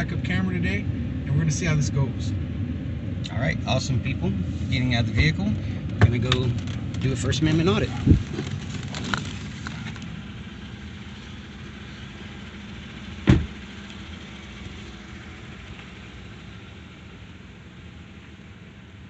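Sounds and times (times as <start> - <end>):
car engine idling: 0.0 - 19.0
car door shutting: 13.2 - 13.7.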